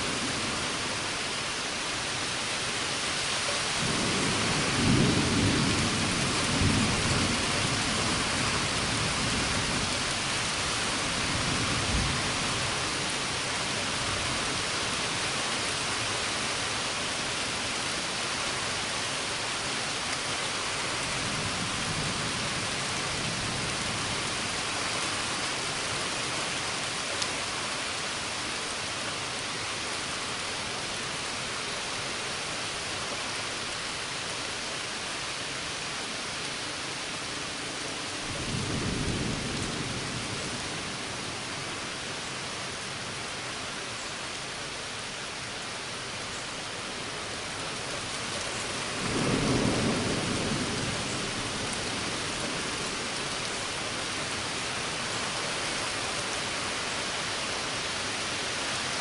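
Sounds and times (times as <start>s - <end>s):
rain falling steadily: 0.0s - 59.0s
thunder rumbling low: 49.0s - 51.2s.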